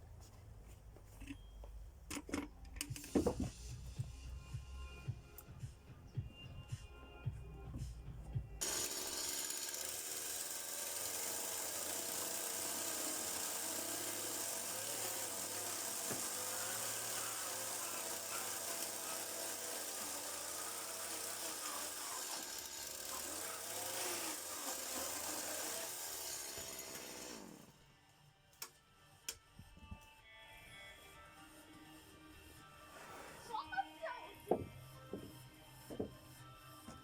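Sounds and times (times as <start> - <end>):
power tool running: 8.6 - 27.9.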